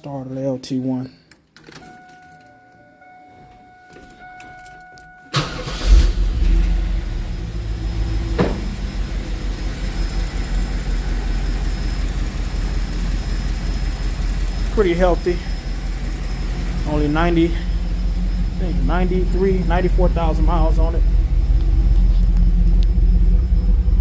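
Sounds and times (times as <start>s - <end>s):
car engine starting and idling: 3.0s - 24.0s
electronic warning tone: 6.7s - 24.0s
person speaking: 14.7s - 15.6s, 16.7s - 17.8s, 18.5s - 21.1s.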